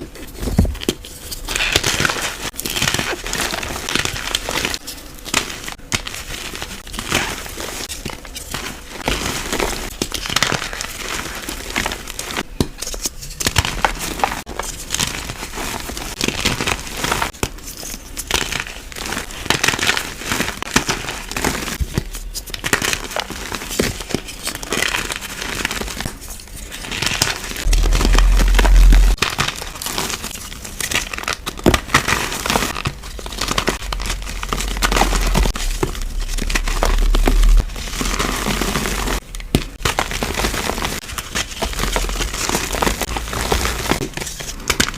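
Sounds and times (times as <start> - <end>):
powder crunching and crumbling: 0.0 - 44.9
low rumble from pressing: 27.6 - 29.2, 33.8 - 38.2.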